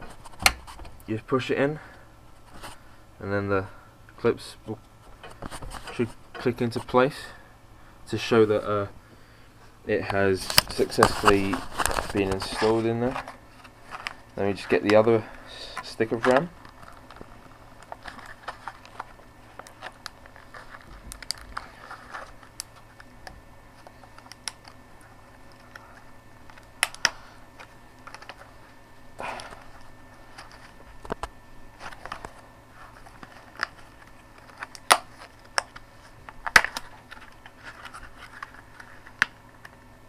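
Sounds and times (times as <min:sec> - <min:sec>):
plastic packaging crinkling: 0:10.3 - 0:39.8.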